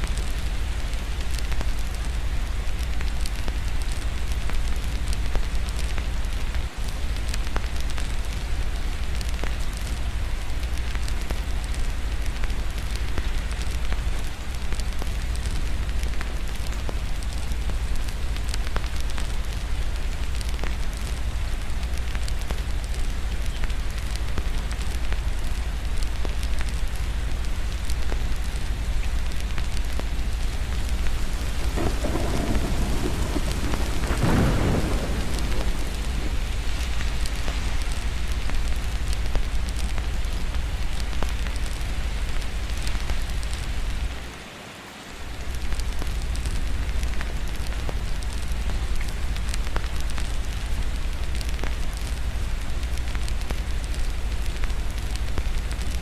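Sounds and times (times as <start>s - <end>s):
steady rain: 0.0s - 56.0s
thunder rolling: 30.6s - 38.8s.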